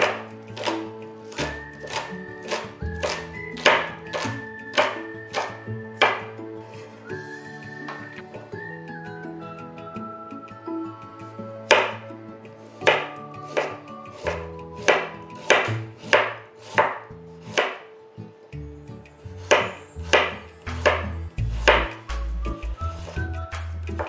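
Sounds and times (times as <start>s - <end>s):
knife chopping on cutting board: 0.0s - 6.3s, 11.7s - 12.0s, 12.8s - 17.8s, 19.4s - 21.0s, 21.6s - 21.9s
light background music: 0.0s - 24.0s.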